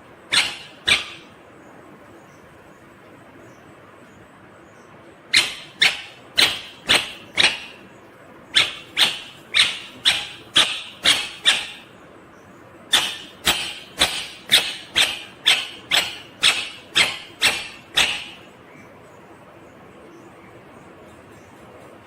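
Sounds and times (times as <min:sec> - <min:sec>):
parakeet screeching: 0:00.2 - 0:01.4, 0:05.3 - 0:07.9, 0:08.5 - 0:11.9, 0:12.9 - 0:18.5.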